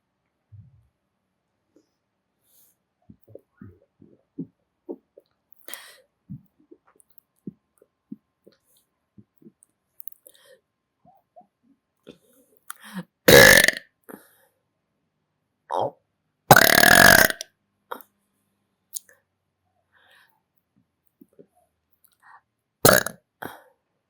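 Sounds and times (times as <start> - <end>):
mouth clicks: 12.7 - 13.8, 16.5 - 17.4, 22.9 - 23.2
person belching: 13.3 - 13.8, 16.5 - 17.4, 22.9 - 23.1.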